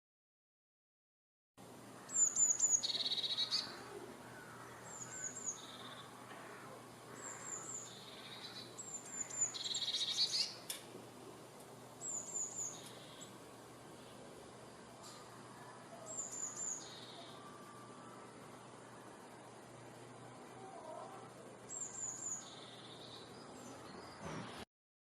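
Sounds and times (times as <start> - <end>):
small songbird singing: 2.0 - 10.7, 11.9 - 14.3, 15.0 - 19.5, 20.4 - 24.4.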